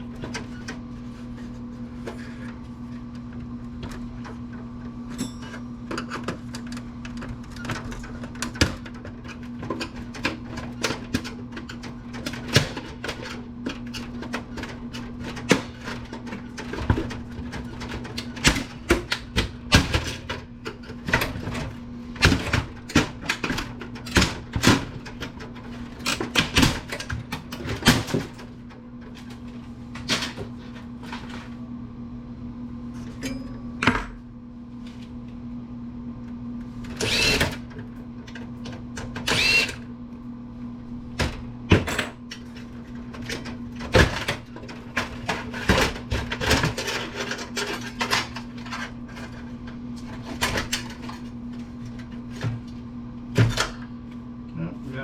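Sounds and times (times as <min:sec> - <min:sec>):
steady low hum: 0:00.0 - 0:55.0
tools and metal parts clattering: 0:41.9 - 0:51.3.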